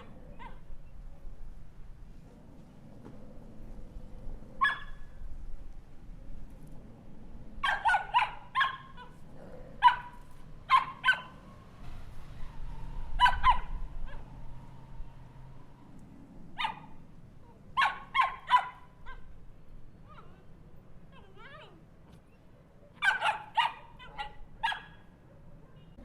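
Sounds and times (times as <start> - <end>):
small dog barking: 0.0 - 0.7, 4.6 - 5.2, 7.6 - 11.6, 13.2 - 14.3, 16.6 - 19.4, 22.9 - 26.0.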